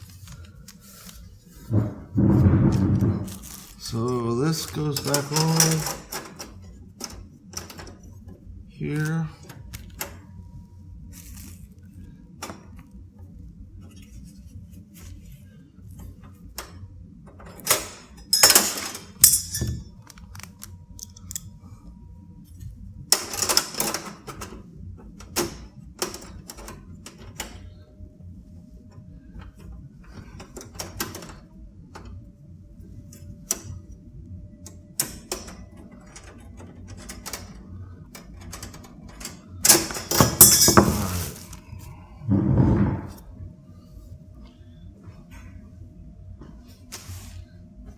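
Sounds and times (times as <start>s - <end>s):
parts clattering: 0.0s - 6.4s, 17.5s - 21.4s, 39.6s - 41.7s
low steady hum: 0.0s - 47.9s.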